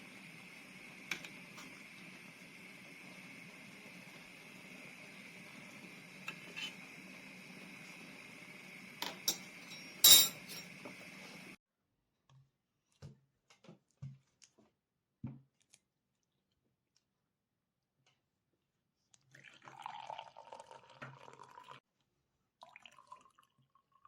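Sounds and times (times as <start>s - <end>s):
dishes and utensils clinking: 9.0s - 11.1s.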